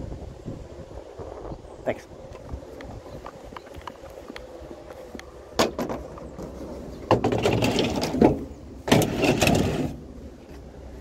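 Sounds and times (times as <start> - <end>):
furniture clattering and scraping: 5.6 - 10.0.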